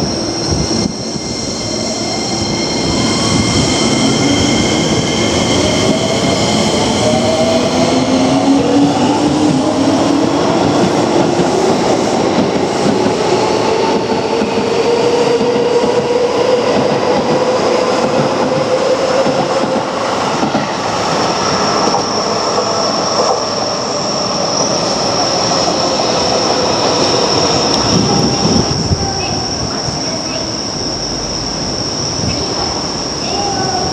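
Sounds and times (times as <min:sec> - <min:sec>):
high steady squeal: 0:00.0 - 0:07.9
train running noise: 0:00.0 - 0:33.9.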